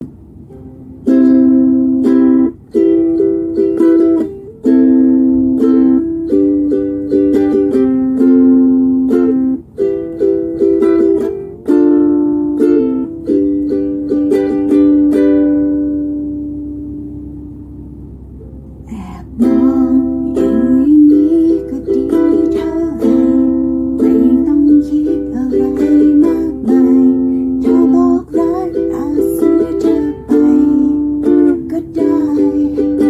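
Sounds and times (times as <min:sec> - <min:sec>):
ukulele strumming chords: 0:00.0 - 0:33.0.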